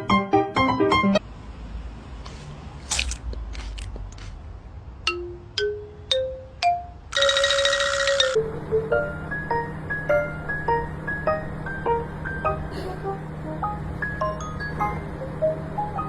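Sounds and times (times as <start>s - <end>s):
soft scuffing: 2.3s - 4.4s
xylophone notes climbing: 5.0s - 8.8s.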